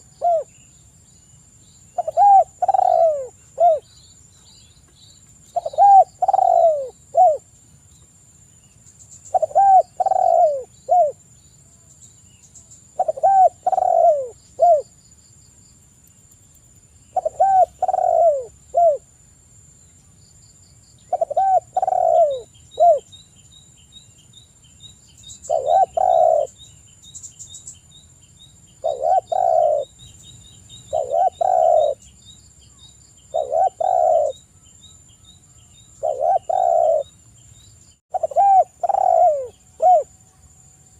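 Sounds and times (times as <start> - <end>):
dove cooing: 0.0 - 0.5, 2.0 - 3.9, 5.5 - 7.5, 9.3 - 11.2, 13.0 - 14.9, 17.2 - 19.1, 21.1 - 23.1, 25.5 - 26.6, 28.8 - 30.0, 30.9 - 32.0, 33.3 - 34.4, 36.0 - 37.1, 38.1 - 40.1.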